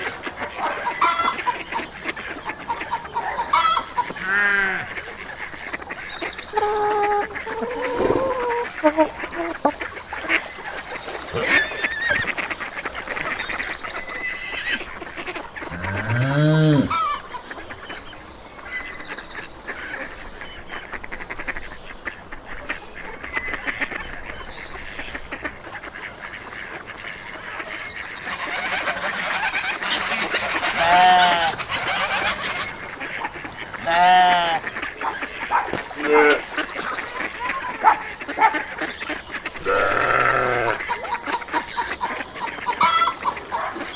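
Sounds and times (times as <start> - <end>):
drawn-out animal call: 0.0 - 17.5, 27.0 - 43.9
geese honking: 0.0 - 17.8, 25.0 - 43.9
small birds chirping: 0.0 - 43.9.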